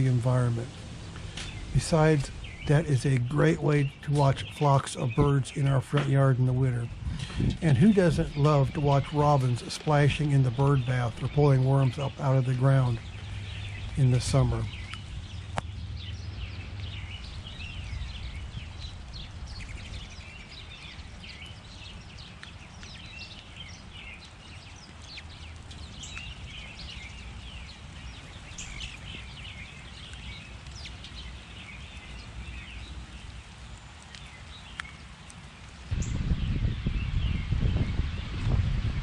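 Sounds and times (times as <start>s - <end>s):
low background rumble: 0.0s - 22.2s
small birds chirping: 0.0s - 39.0s.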